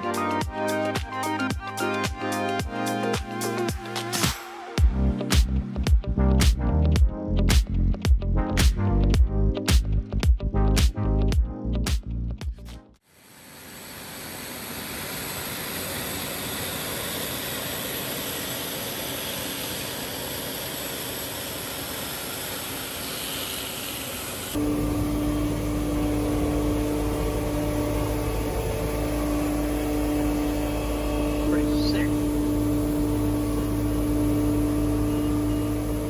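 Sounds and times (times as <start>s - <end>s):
rushing roar of a blower: 13.6s - 36.0s
heavy engine rumble: 24.6s - 36.0s.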